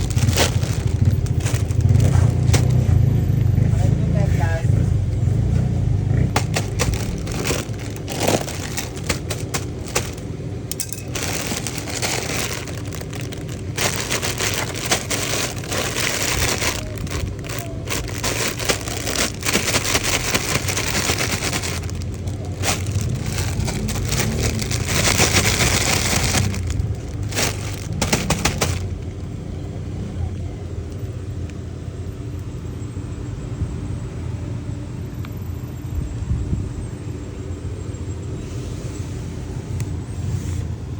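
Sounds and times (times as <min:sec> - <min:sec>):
packaging crinkling and crackling: 0:00.0 - 0:02.9, 0:06.3 - 0:29.3
steady low rumble: 0:00.0 - 0:31.9.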